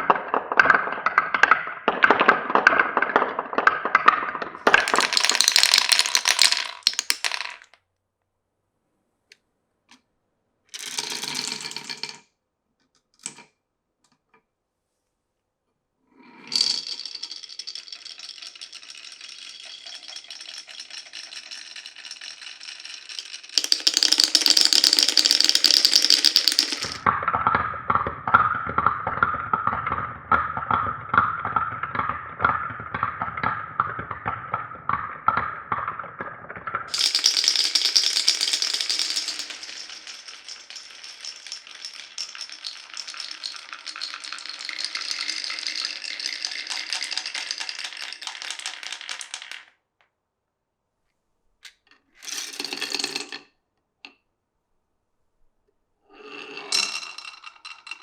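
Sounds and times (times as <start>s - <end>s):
marbles clattering: 0.0s - 7.8s, 10.8s - 12.2s, 16.4s - 27.2s, 27.9s - 49.8s, 51.6s - 53.5s, 56.2s - 58.0s
marbles clicking over bumpy track: 0.0s - 7.8s, 10.8s - 12.2s, 16.5s - 49.7s, 56.6s - 58.0s
marbles rolling smoothly: 0.0s - 7.8s, 10.7s - 12.3s, 16.2s - 49.8s, 51.6s - 53.5s, 56.1s - 58.0s.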